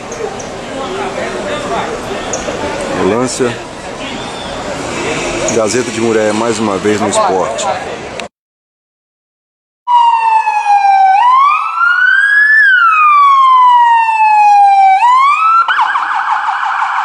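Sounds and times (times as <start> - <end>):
emergency siren wail and yelp: 9.9 - 17.0.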